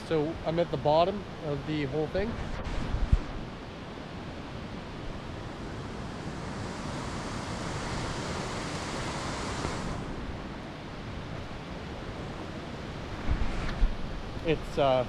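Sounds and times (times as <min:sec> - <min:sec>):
waterfall rushing: 0:04.9 - 0:10.5.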